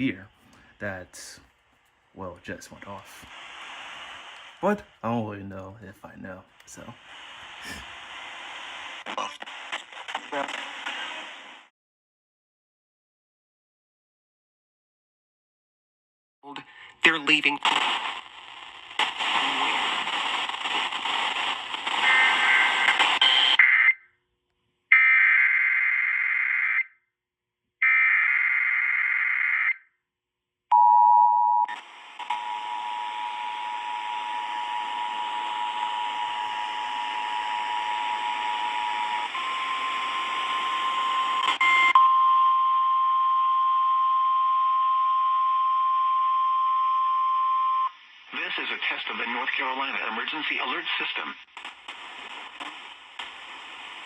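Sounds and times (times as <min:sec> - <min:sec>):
radio static hiss: 0:00.0 - 0:01.4, 0:02.2 - 0:11.7, 0:16.5 - 0:23.8, 0:31.7 - 0:41.9, 0:48.0 - 0:54.0.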